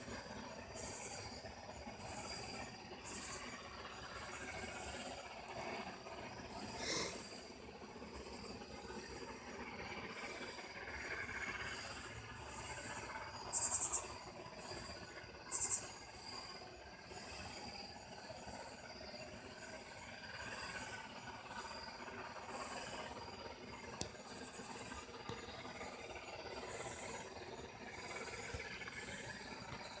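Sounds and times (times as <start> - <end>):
insects buzzing: 0.0 - 30.0.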